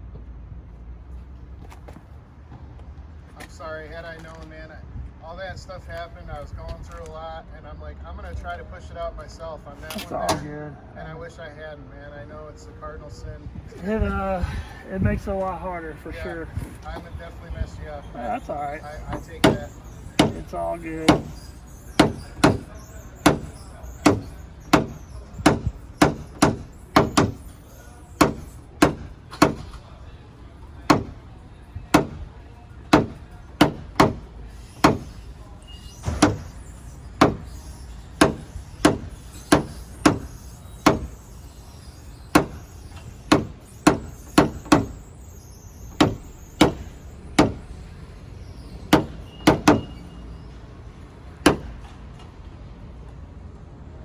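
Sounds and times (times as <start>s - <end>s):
hammer tapping sheet metal: 19.1s - 21.4s, 23.3s - 27.4s, 48.9s - 49.9s, 51.5s - 51.7s.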